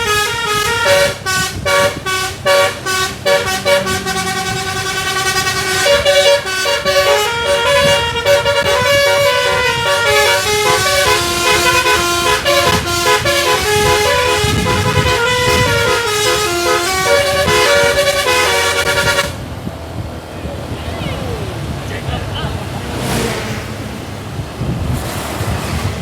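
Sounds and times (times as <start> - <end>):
musical air horn melody: 0.0 - 19.4.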